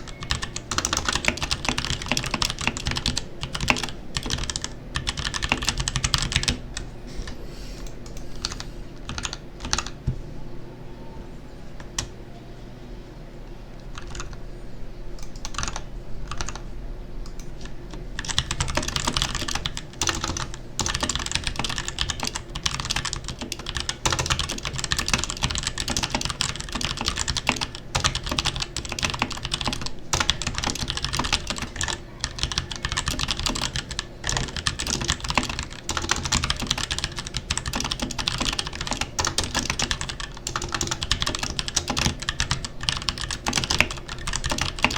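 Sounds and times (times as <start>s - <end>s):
mechanical keyboard typing: 0.0s - 6.6s, 8.0s - 10.0s, 14.0s - 14.4s, 15.2s - 16.6s, 17.6s - 44.9s.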